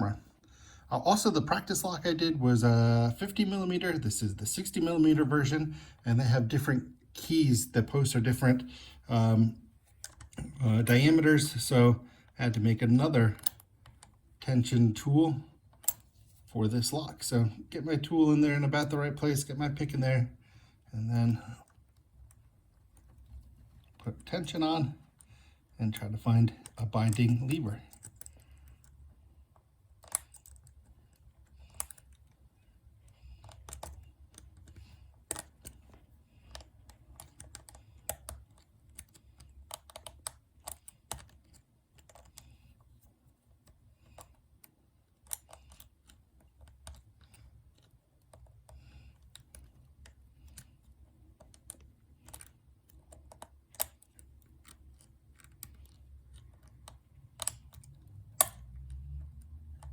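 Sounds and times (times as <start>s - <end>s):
lock pick clicking in padlock: 51.4s - 58.9s.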